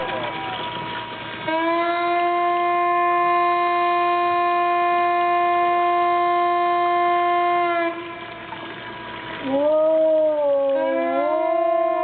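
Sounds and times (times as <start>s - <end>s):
siren sounding steady note: 9.4s - 12.0s.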